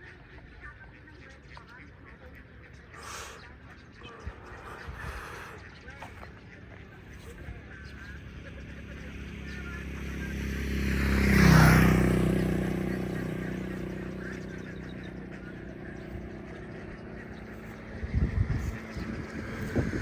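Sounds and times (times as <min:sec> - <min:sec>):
vehicle passing close by: 0:07.6 - 0:20.0.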